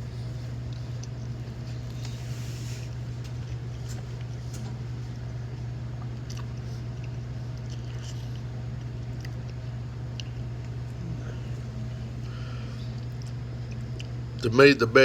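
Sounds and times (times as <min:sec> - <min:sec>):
steady low hum: 0:00.0 - 0:15.0
person chewing: 0:05.9 - 0:14.3.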